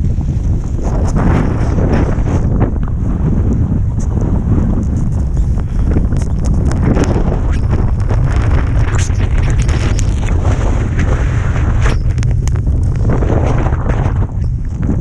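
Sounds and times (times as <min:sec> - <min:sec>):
strong wind buffeting microphone: 0:00.0 - 0:15.0
sharp clicks and scrapes: 0:03.5 - 0:15.0.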